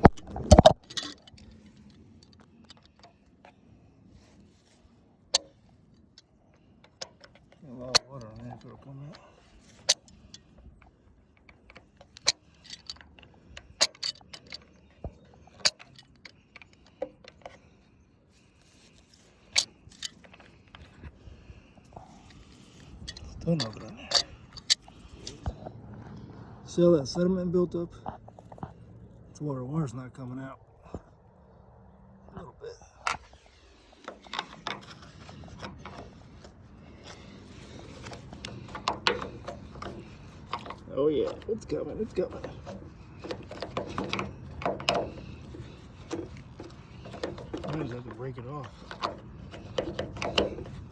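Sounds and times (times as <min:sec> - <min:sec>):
sharp metallic clicks and clinks: 0:00.0 - 0:03.2, 0:06.2 - 0:17.6, 0:22.0 - 0:25.5, 0:33.1 - 0:50.9.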